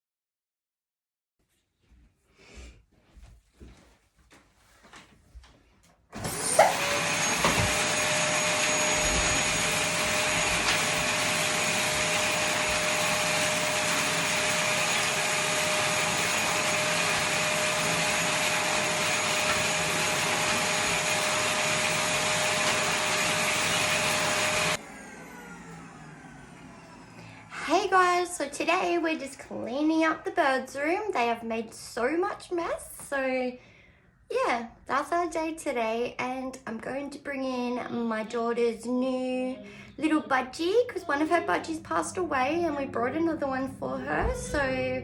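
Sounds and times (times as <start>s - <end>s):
vacuum cleaner running: 6.1s - 30.0s, 40.6s - 45.0s.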